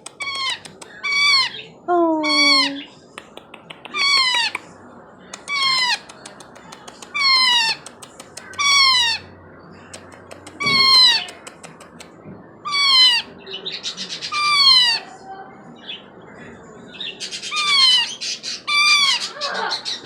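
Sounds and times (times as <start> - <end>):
parakeet crying calls: 2.2 - 2.9, 4.0 - 4.5, 7.2 - 7.8, 8.6 - 9.3, 10.6 - 11.3, 12.7 - 13.3, 13.9 - 15.1, 17.3 - 20.0.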